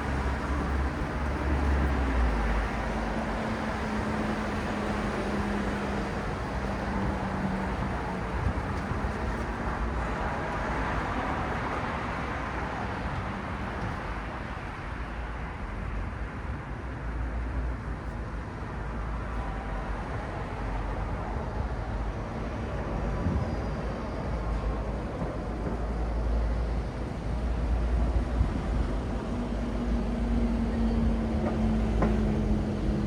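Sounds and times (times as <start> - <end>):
city road traffic: 0.0 - 33.0
vehicle engine hum: 26.1 - 33.0.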